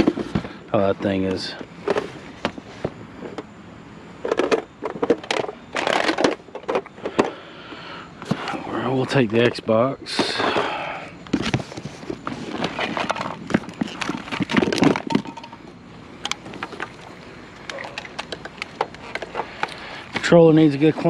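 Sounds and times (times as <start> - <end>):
scraping rustle: 10.1 - 15.4.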